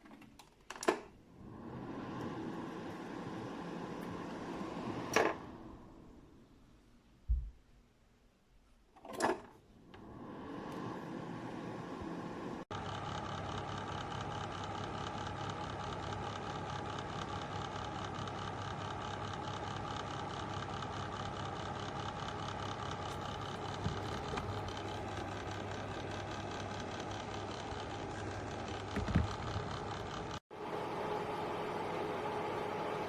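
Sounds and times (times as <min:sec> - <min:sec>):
fan heater air whir: 0:20.6 - 0:33.0
low motor hum: 0:22.0 - 0:33.0.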